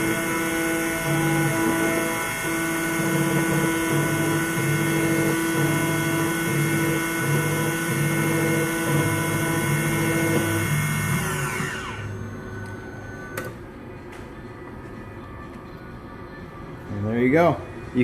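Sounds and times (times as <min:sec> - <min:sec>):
key cutting machine motor whine: 0:00.0 - 0:13.5.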